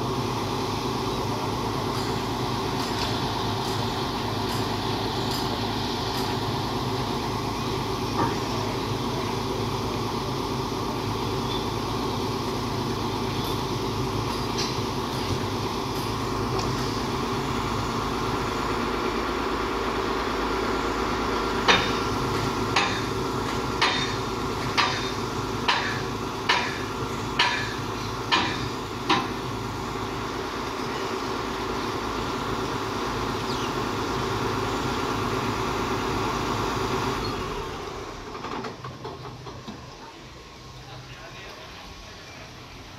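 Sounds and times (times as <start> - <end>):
diesel engine running: 0.0 - 42.9
loud metallic clanks: 23.8 - 29.4.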